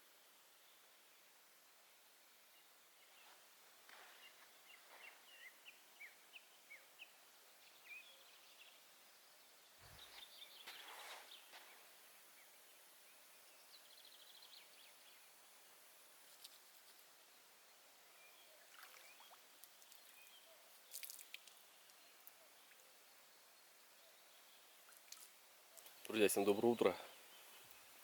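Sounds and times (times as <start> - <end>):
small bird chirps: 18.1 - 28.0.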